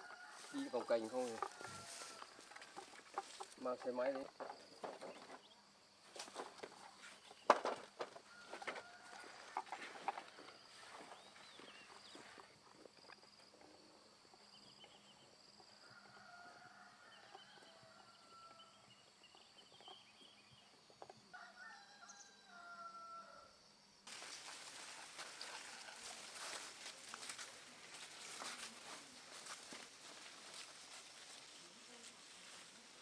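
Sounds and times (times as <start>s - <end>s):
distant roosters crowing: 0.0s - 4.3s, 7.7s - 11.3s, 15.6s - 19.2s, 21.3s - 23.6s.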